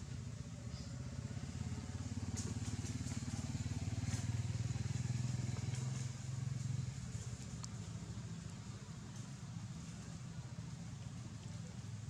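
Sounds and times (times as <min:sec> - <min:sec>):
small engine running: 0:01.0 - 0:07.5.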